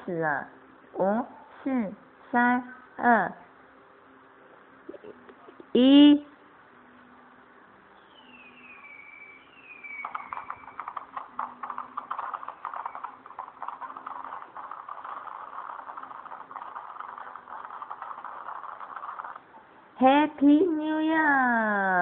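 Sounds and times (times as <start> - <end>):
firework whistles falling in pitch: 8.0 - 11.0
rapid firework crackling: 8.8 - 19.6.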